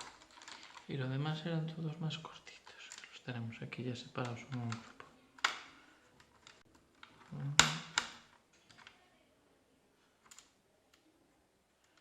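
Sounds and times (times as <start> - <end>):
small parts and screws clicking: 0.0 - 0.9, 4.2 - 9.0, 11.8 - 12.0.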